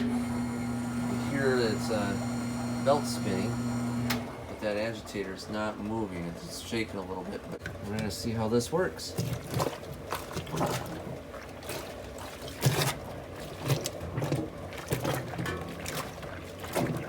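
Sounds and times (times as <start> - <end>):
plunger sloshing water and clothes: 7.5 - 17.0.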